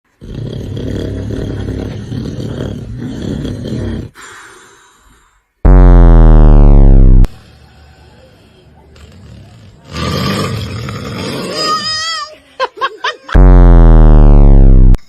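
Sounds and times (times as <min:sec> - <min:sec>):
loud rasping snoring: 0:00.1 - 0:04.3, 0:07.2 - 0:11.7.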